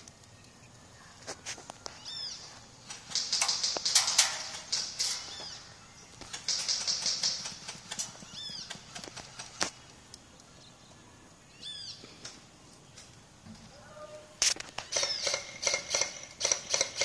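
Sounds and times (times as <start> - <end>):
sharp clicks: 0.0 - 0.8, 2.8 - 10.6, 14.4 - 17.0
bird chirps: 1.8 - 2.6, 4.9 - 6.9, 8.0 - 13.1, 14.8 - 15.8.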